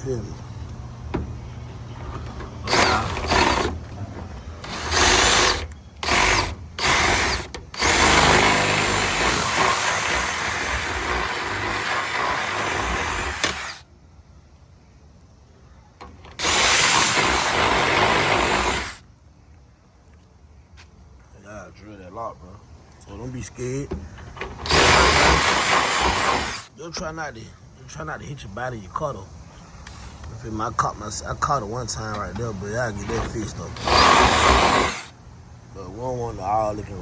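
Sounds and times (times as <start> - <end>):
power drill boring metal: 2.2 - 3.9, 4.6 - 13.8, 16.4 - 19.0, 24.5 - 26.7, 33.0 - 35.2.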